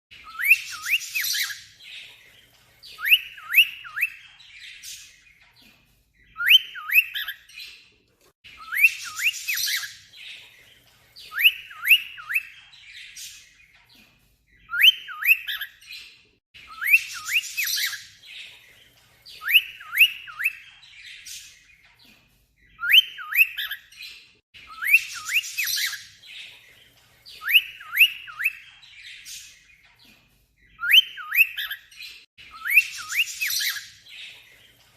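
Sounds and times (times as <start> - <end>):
cockatiel whistling alarm mimicry: 0.2 - 1.6, 3.0 - 4.2, 6.4 - 7.4, 8.6 - 10.0, 11.3 - 12.6, 14.7 - 15.7, 16.7 - 18.1, 19.4 - 20.8, 22.8 - 23.8, 24.6 - 26.0, 27.4 - 28.8, 30.8 - 31.8, 32.5 - 33.9.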